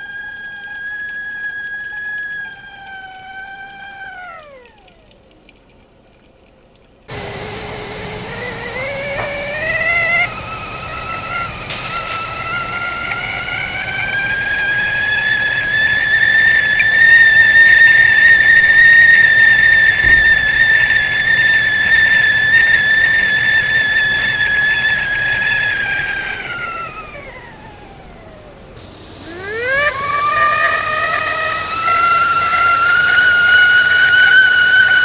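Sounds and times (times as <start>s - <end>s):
whistling kettle: 0.0s - 5.6s, 7.1s - 35.0s
steam hissing: 7.1s - 35.0s.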